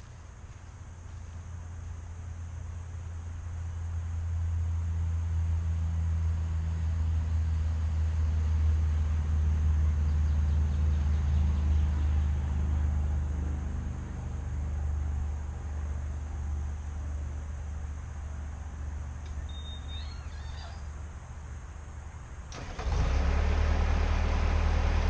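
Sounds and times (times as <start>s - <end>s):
skid steer engine droning: 22.5s - 25.0s.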